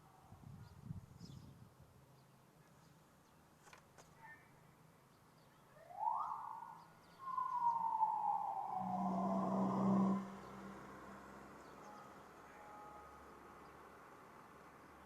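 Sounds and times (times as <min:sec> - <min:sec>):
police siren wailing: 0:05.8 - 0:12.0
low steady drone: 0:05.9 - 0:13.7.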